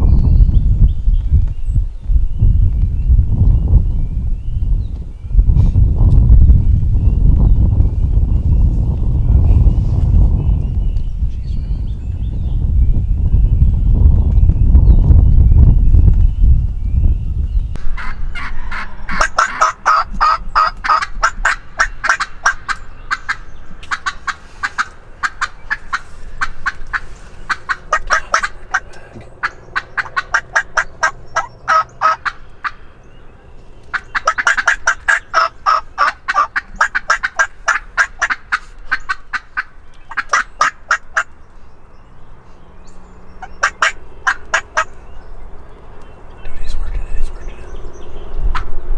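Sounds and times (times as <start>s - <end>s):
turkey calling: 18.0s - 32.8s, 33.9s - 41.3s, 43.4s - 45.0s.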